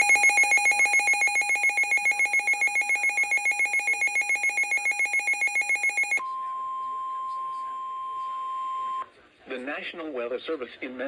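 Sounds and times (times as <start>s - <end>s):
weather radio trilling alarm: 0.0s - 6.2s.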